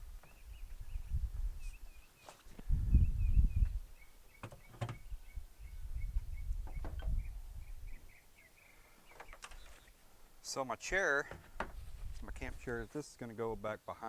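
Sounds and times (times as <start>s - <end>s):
sharp knocks and clicks: 4.4s - 5.0s
camping gear handling: 11.2s - 12.3s.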